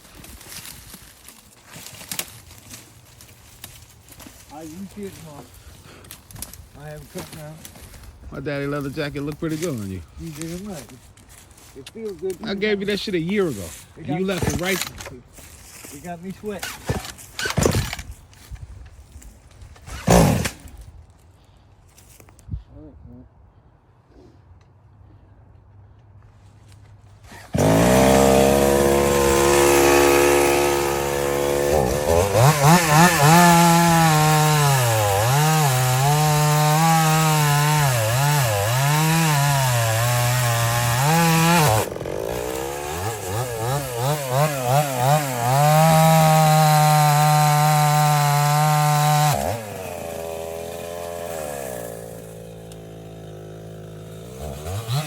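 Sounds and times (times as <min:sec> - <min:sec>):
chainsaw revving and cutting wood: 0:12.3 - 0:15.2, 0:15.8 - 0:18.0, 0:19.8 - 0:20.8, 0:27.2 - 0:55.0.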